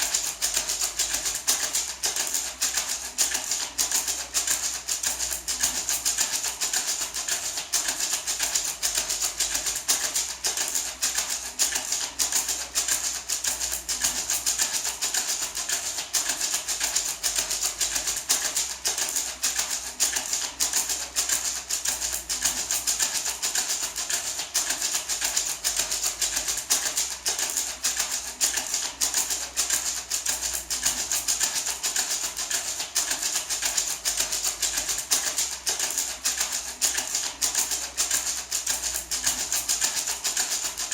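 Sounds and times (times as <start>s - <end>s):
maraca rattling: 0.0s - 40.9s.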